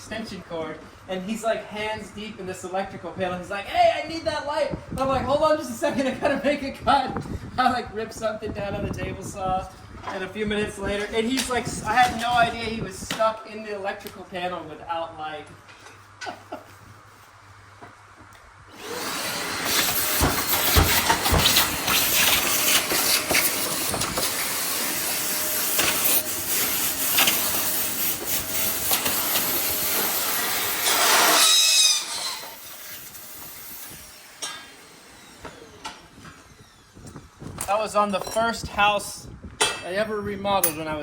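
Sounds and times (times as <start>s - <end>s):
power tool running on wood: 18.7s - 37.6s.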